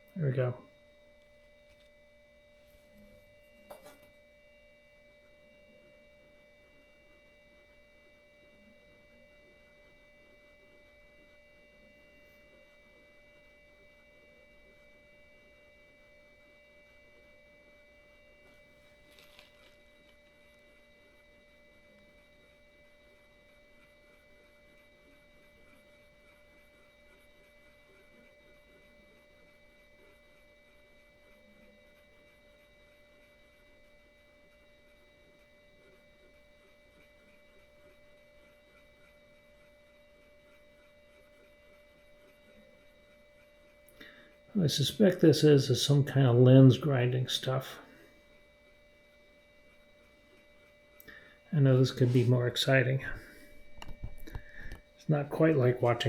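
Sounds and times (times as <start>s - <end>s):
high electronic whine: 51.1s - 56.0s.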